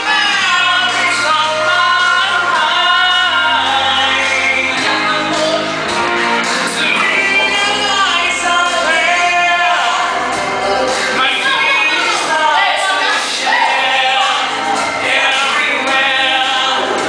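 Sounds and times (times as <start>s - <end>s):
song with gliding sung vocals: 0.0s - 17.0s.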